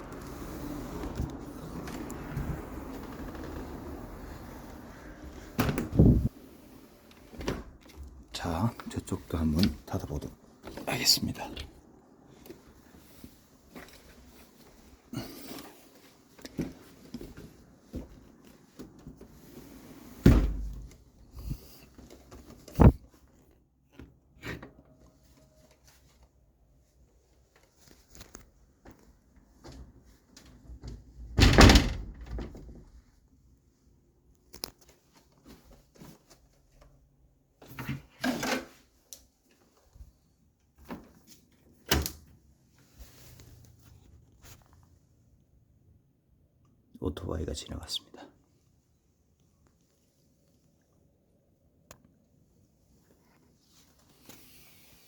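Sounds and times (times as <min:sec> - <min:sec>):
window sliding rumble: 0:00.0 - 0:06.7.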